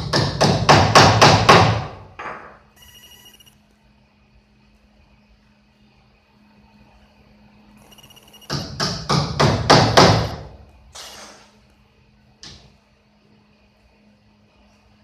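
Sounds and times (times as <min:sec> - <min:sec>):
loud knocks: 0:00.0 - 0:02.6, 0:08.5 - 0:10.5.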